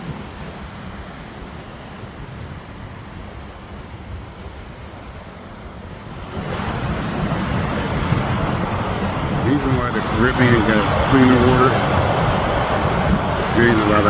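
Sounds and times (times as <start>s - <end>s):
surf rushing: 0.0s - 14.0s
wind: 0.0s - 14.0s.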